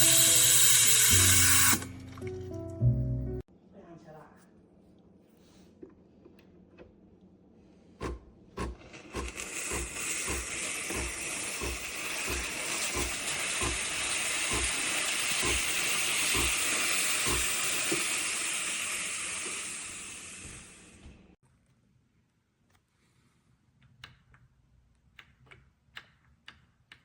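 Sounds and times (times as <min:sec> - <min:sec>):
steam wand hissing: 0:00.0 - 0:01.9, 0:08.9 - 0:21.0
pump thumping: 0:08.0 - 0:18.2.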